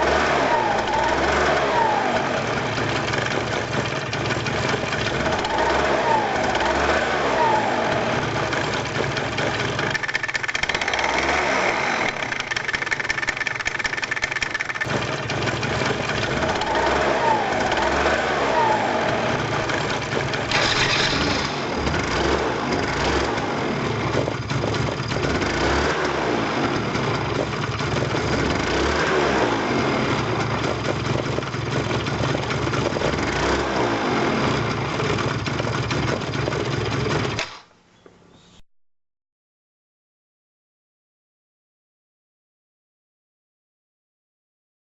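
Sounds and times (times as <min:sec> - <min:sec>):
scooter engine idling and revving: 0:00.0 - 0:37.6.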